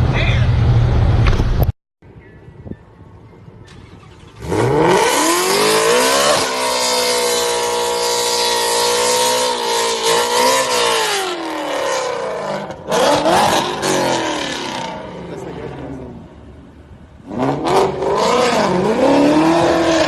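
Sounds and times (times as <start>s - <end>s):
car engine revving hard: 4.2s - 15.1s, 17.3s - 20.0s.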